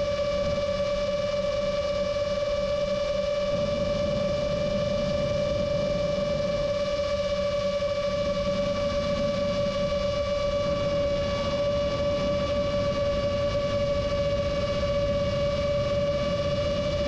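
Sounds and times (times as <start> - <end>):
drone motors whining: 0.0 - 17.0
wind rumble: 0.0 - 17.0.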